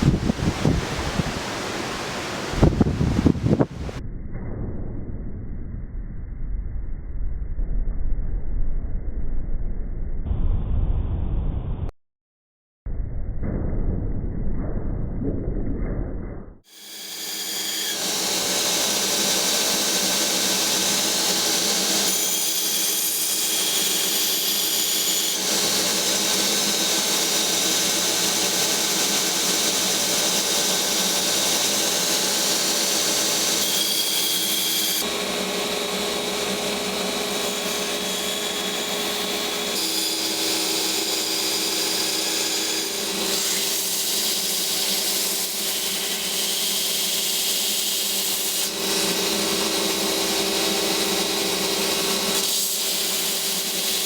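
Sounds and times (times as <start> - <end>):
power grinder on steel: 16.7 - 54.0.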